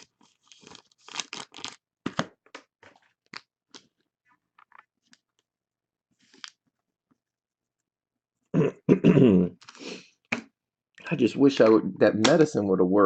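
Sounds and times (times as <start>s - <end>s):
card packaging crinkling: 0.0s - 3.8s.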